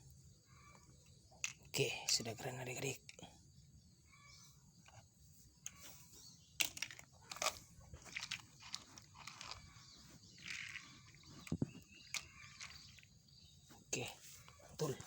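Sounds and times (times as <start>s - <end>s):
plastic toy pieces clicking: 6.6s - 9.6s.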